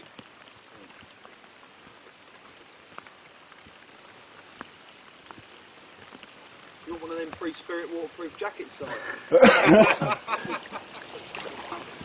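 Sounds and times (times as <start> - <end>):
steady rain hiss: 0.0 - 12.0.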